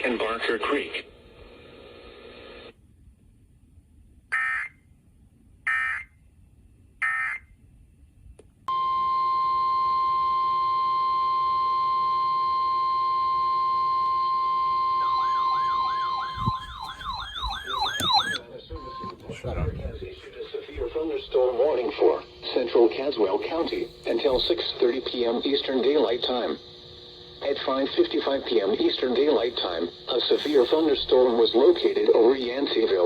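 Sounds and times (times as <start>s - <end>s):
steady warning alarm tone: 4.3s - 4.8s, 5.7s - 6.2s, 7.0s - 7.5s, 8.7s - 19.5s
data squawk bursts: 7.0s - 7.4s, 14.9s - 18.9s
warbling alarm tone: 13.5s - 19.2s.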